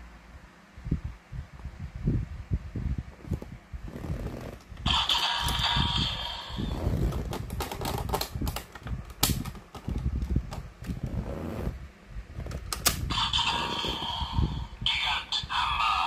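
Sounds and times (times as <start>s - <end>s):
handling rumble: 2.2s - 14.7s.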